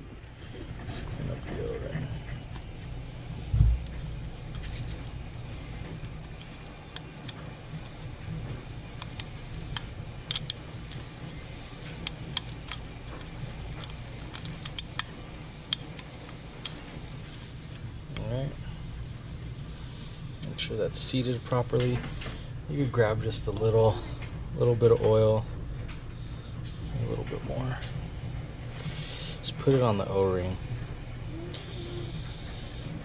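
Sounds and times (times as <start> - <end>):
low background hum: 0.0 - 33.0
plastic parts clicking: 9.0 - 11.1, 11.8 - 15.1.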